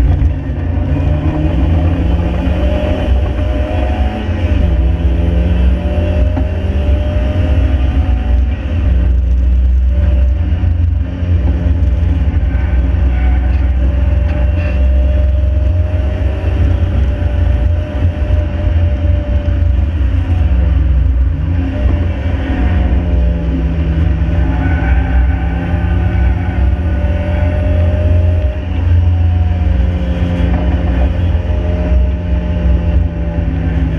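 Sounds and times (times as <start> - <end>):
car engine running under load: 0.0 - 33.9
road and wind rumble: 0.0 - 33.9.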